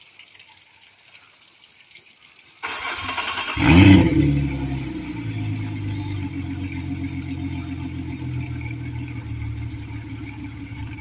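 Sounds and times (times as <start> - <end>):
outboard motor starting and idling: 2.6 - 11.0.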